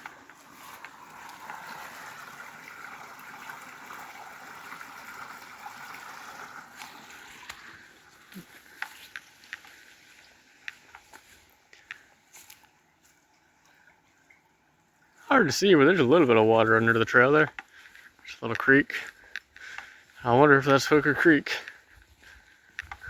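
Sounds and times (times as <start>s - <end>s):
footsteps crunching on trail: 0.0s - 2.8s, 6.6s - 13.3s, 16.2s - 23.0s
creek trickling: 0.0s - 23.0s.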